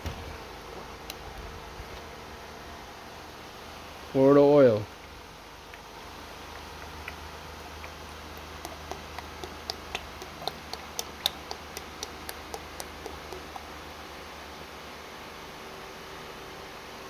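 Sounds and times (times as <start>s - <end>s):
low steady hum: 0.0s - 17.0s
sharp irregular clicks: 6.5s - 13.7s.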